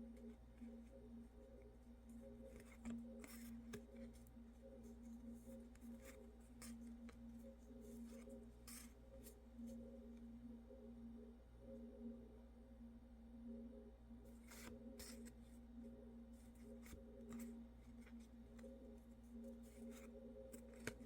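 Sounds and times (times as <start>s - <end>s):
soft rustles and clicks: 0.0s - 10.2s
faint electrical hum: 0.0s - 21.0s.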